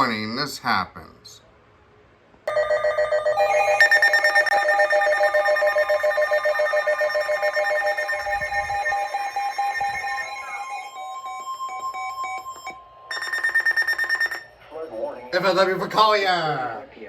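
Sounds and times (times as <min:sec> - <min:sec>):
stepped beeps over steady tone: 0:02.5 - 0:14.6
warbling emergency alert tone: 0:02.5 - 0:14.6.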